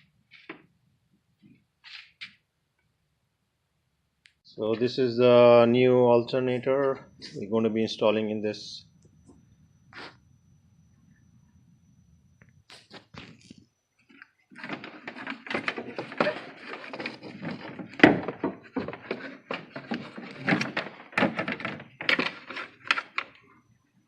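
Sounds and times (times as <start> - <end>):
metal clunks and scraping: 14.6 - 23.0.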